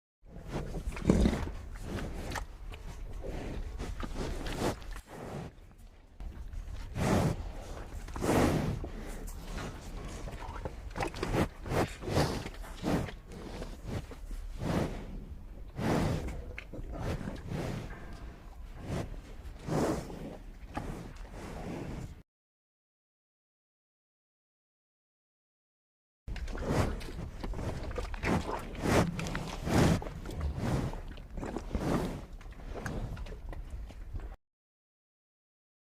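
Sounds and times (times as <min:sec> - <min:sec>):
cow chewing and crunching: 0:00.3 - 0:22.1, 0:26.3 - 0:34.4.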